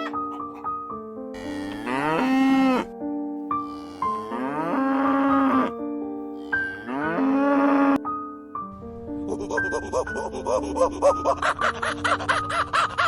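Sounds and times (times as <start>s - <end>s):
keyboard music: 0.0s - 13.0s
cow mooing: 1.4s - 2.9s, 3.6s - 5.8s, 6.4s - 8.0s.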